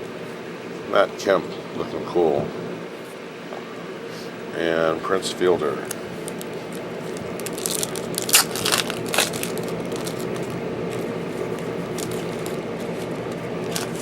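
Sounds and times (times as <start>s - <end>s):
packaging crinkling: 5.8s - 14.0s
low hum: 5.9s - 14.0s.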